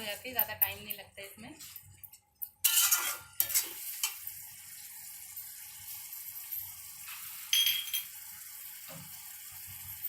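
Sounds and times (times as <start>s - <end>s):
food sizzling in a frying pan: 2.7s - 10.0s
ringing metal clink: 7.6s - 8.1s.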